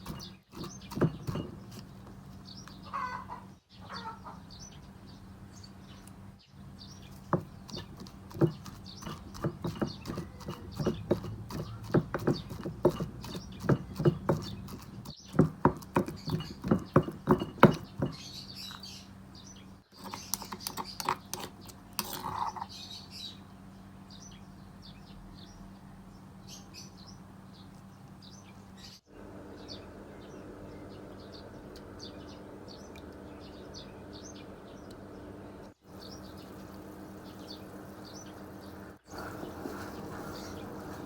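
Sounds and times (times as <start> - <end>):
rhythmic kitchen knocking: 0.0 - 1.8, 7.3 - 18.2.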